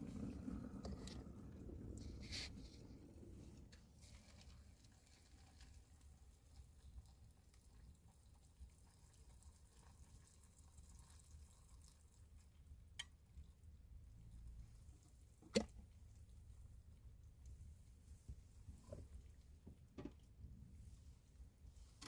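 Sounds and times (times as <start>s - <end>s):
low steady hum: 0.0s - 5.0s.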